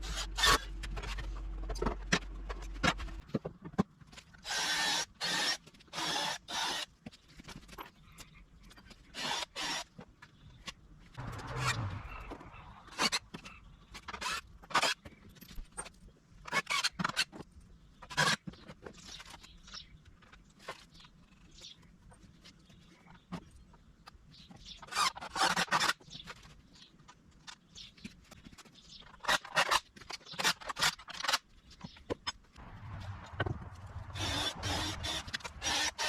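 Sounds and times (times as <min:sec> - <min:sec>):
knocks clatters and scrapes: 0:00.0 - 0:04.4, 0:10.0 - 0:19.5.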